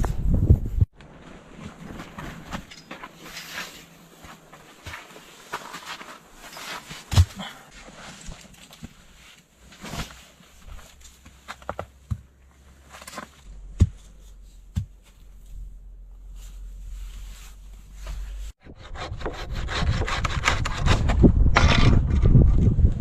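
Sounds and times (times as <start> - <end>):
saw cutting wood: 18.6 - 21.1.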